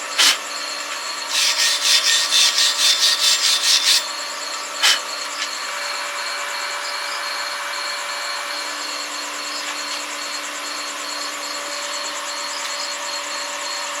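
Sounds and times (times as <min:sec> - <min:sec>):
welding arc hissing: 0:01.3 - 0:04.1.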